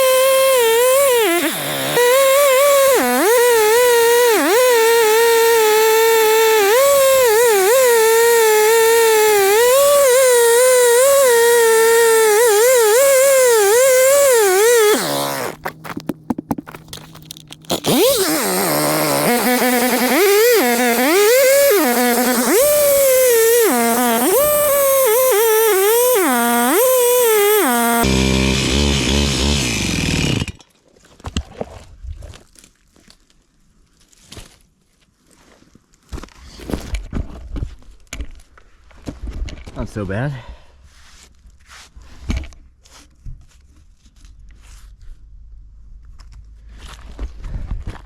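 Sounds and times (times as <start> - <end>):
chainsaw cutting wood: 0.0 - 15.6, 17.6 - 30.6.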